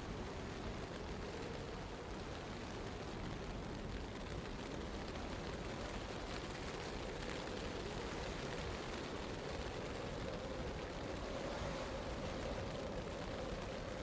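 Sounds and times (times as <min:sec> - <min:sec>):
blizzard wind rushing: 0:00.0 - 0:14.0.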